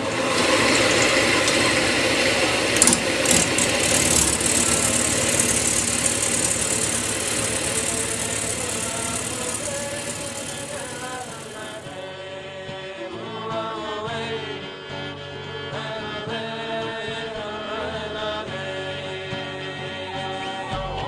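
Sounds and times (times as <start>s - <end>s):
wood lathe hissing: 0.0s - 12.0s.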